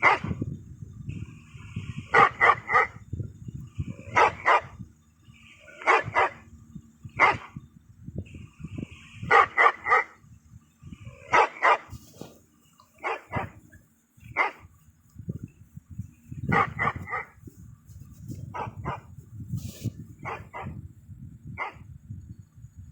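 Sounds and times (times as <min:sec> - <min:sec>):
dog barking: 0:00.0 - 0:00.4, 0:02.1 - 0:03.0, 0:04.1 - 0:04.8, 0:05.7 - 0:06.4, 0:07.2 - 0:07.6, 0:09.3 - 0:10.2, 0:11.2 - 0:12.0, 0:13.0 - 0:13.6, 0:14.3 - 0:14.7, 0:16.5 - 0:17.4, 0:18.5 - 0:19.1, 0:20.2 - 0:20.8, 0:21.6 - 0:21.9.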